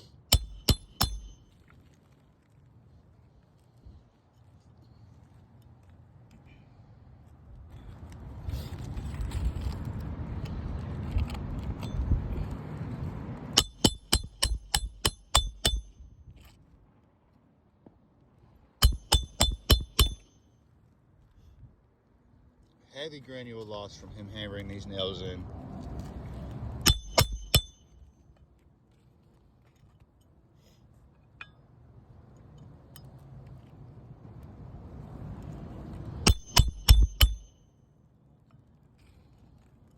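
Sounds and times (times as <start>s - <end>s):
hammer striking nail: 0.3s - 1.4s, 13.6s - 16.0s, 18.8s - 20.3s, 26.8s - 27.9s, 36.2s - 37.6s.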